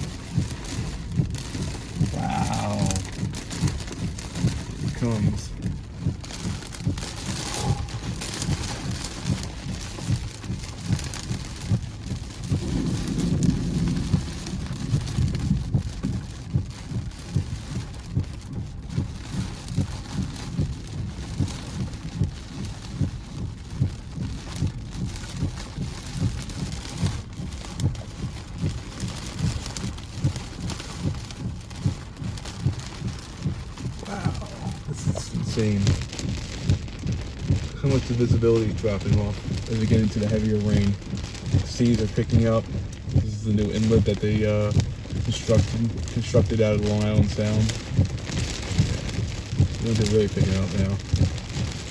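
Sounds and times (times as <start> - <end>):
wind buffeting microphone: 0.0 - 38.4
heavy rain hiss: 0.0 - 51.9.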